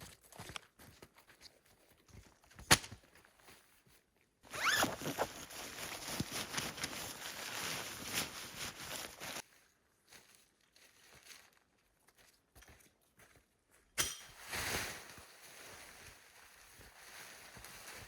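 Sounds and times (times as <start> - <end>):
zipper pulled open: 4.5 - 5.4
fabric and gear rustling: 4.5 - 9.4.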